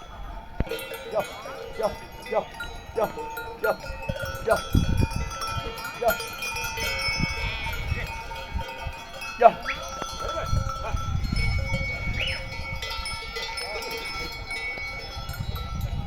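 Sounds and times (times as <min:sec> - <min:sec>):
livestock bells clanking: 0:00.0 - 0:16.0
sheep bleating: 0:01.1 - 0:04.8, 0:05.6 - 0:08.3.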